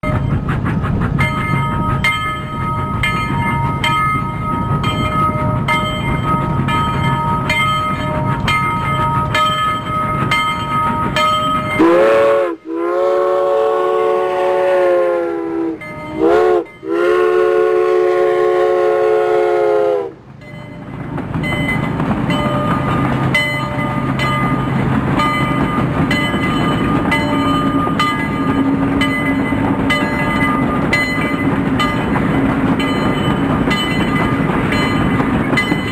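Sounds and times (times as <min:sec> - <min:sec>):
train running with rhythmic clicks: 0:00.0 - 0:35.9
locomotive horn blasts: 0:11.8 - 0:20.1.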